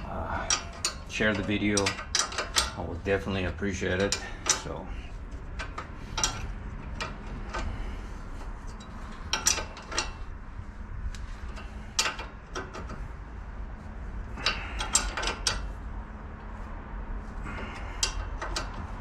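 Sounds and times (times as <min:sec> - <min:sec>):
low steady hum: 0:00.0 - 0:19.0
metallic clicks of hand tools: 0:00.5 - 0:02.8, 0:04.0 - 0:04.8, 0:14.4 - 0:15.7, 0:17.5 - 0:18.9.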